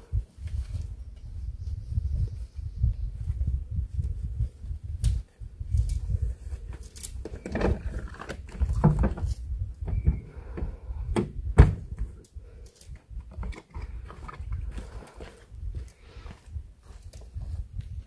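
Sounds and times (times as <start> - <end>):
footsteps on forest trail: 14.0 - 18.0.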